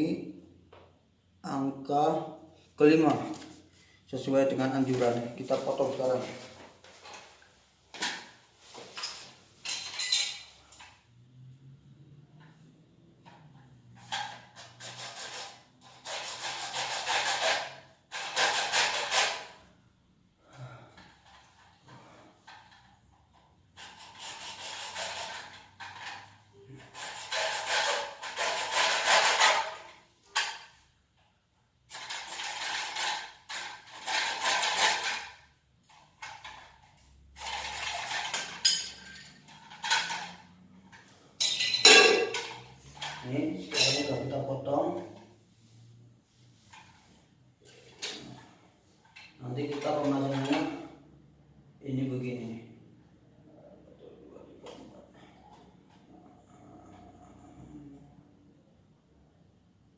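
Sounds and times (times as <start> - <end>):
saw rasping: 14.6 - 19.6, 23.8 - 25.7, 26.8 - 29.9.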